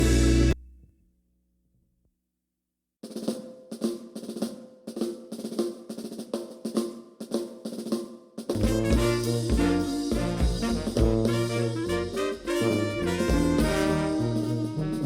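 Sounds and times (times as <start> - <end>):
snare and bass drum hits: 8.5 - 14.2
jazzy tune: 8.5 - 15.0.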